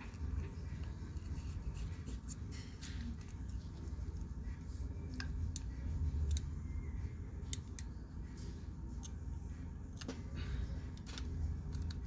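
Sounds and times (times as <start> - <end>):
steady low hum: 0.0 - 12.0
small metal parts clicking: 10.9 - 12.0.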